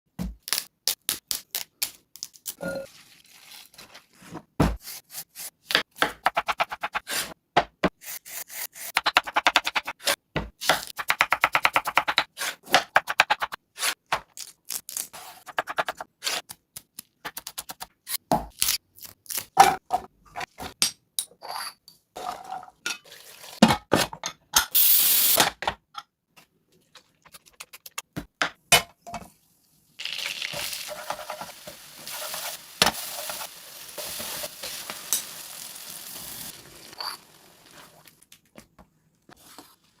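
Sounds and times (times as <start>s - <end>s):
food sizzling: 24.8s - 25.4s, 29.9s - 38.2s.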